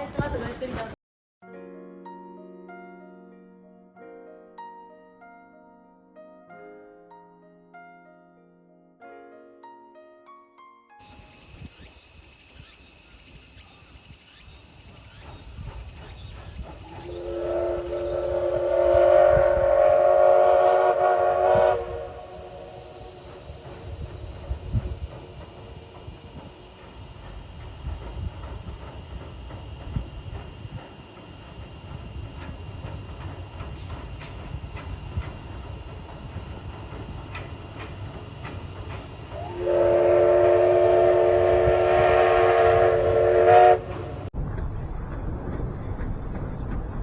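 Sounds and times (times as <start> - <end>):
steam locomotive rumbling past: 11.0 - 47.0
steam whistle blast: 16.8 - 23.8, 39.3 - 44.3.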